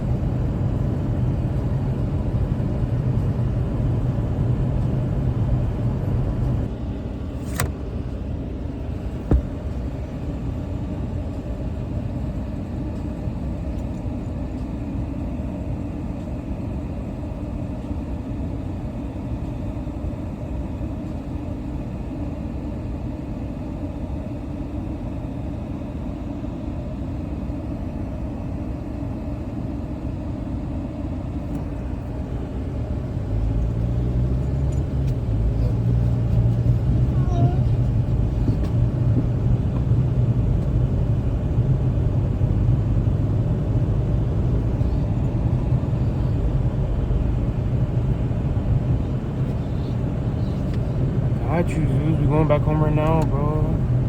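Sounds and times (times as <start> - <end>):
road traffic rumble: 0.0 - 22.2, 26.0 - 54.0
short knock: 9.2 - 9.7.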